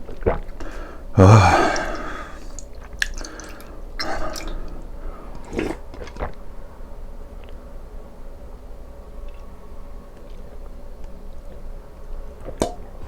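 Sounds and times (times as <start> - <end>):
person chewing and slurping: 0.1 - 6.4
loud breathy sound: 0.6 - 2.6.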